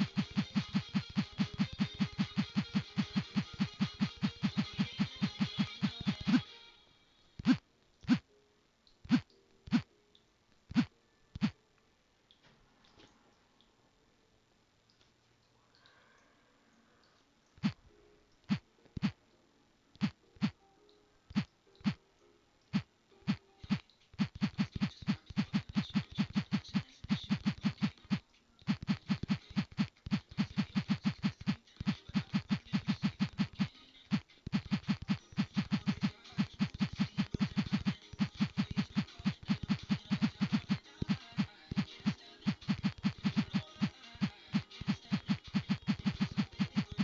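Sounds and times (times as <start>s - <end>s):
sharp clicks: 22.6s - 47.0s.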